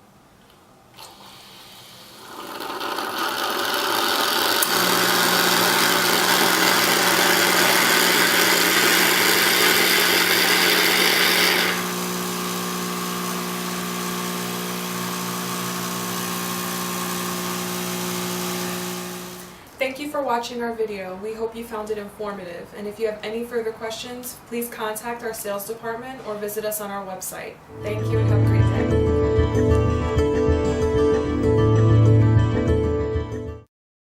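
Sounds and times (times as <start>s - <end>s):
espresso machine water wand hissing: 1.0s - 19.5s
vibratory pump humming: 1.0s - 19.6s.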